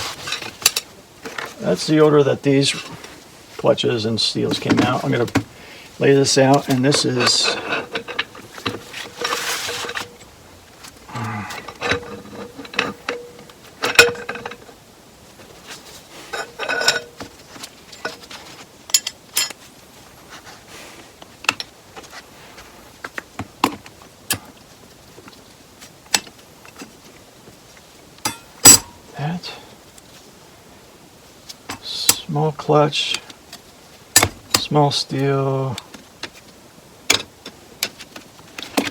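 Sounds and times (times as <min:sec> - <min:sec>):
light metal scrapes: 0:06.6 - 0:10.2
metal plates clicking and clinking: 0:06.6 - 0:10.3, 0:11.5 - 0:14.8, 0:16.3 - 0:17.3, 0:28.3 - 0:29.1.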